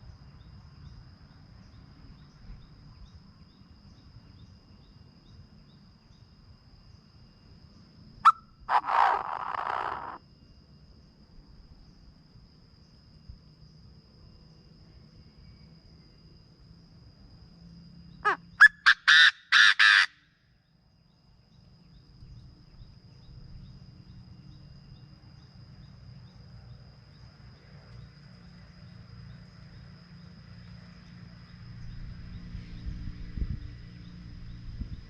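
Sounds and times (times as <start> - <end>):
francolin call: 8.2 - 10.2, 18.2 - 20.3.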